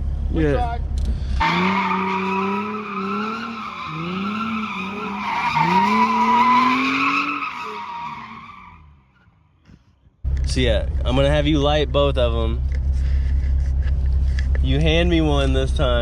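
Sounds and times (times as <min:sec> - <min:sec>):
car engine revving: 0:01.3 - 0:08.9
tyre squeal: 0:01.4 - 0:08.8.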